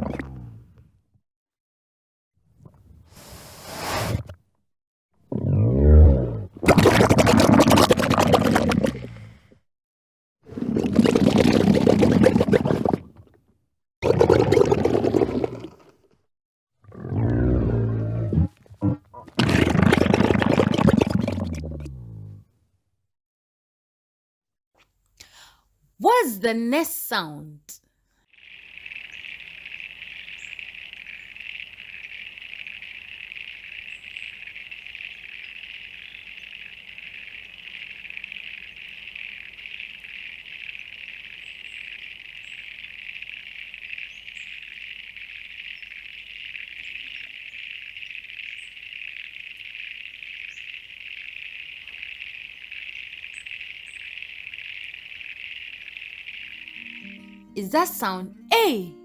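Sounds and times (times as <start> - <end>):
frogs trilling chorus: 28.4 - 57.2.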